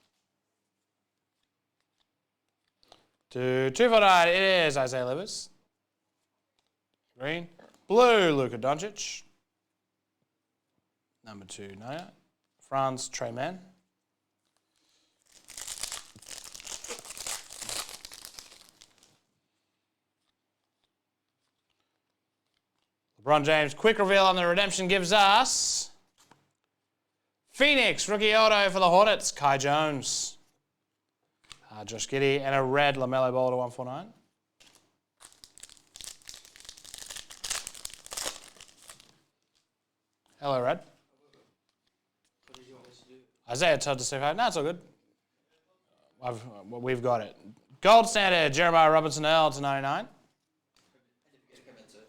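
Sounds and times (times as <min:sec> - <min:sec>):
card pack wrapper crinkling: 0:14.4 - 0:19.2, 0:34.6 - 0:39.8.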